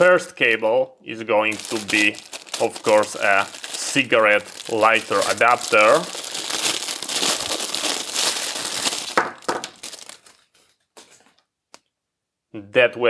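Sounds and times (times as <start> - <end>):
packaging crinkling: 1.3 - 11.4.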